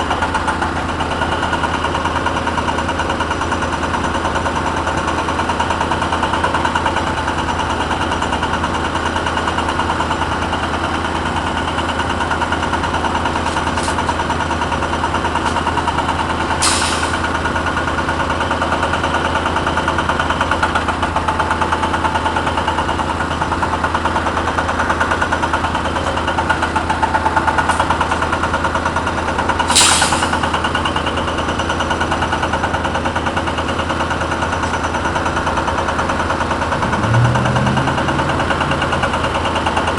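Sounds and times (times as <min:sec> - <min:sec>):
excavator diesel engine: 0:00.0 - 0:39.9.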